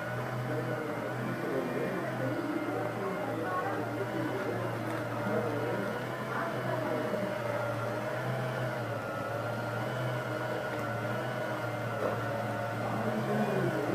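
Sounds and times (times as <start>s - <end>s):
small electric motor humming: 0.0s - 13.9s.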